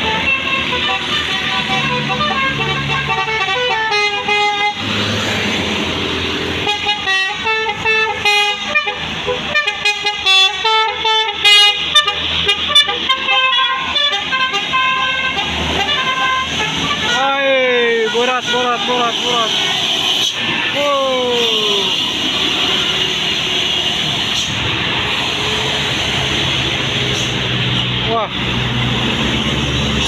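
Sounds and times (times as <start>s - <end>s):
bus musical horn playing: 0.0s - 4.9s, 6.6s - 20.4s, 21.5s - 24.5s.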